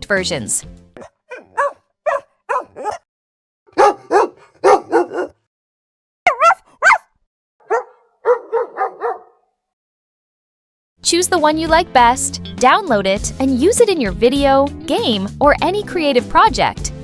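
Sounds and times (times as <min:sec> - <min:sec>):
dog barking: 0:01.0 - 0:03.1, 0:03.7 - 0:05.5, 0:06.3 - 0:09.5.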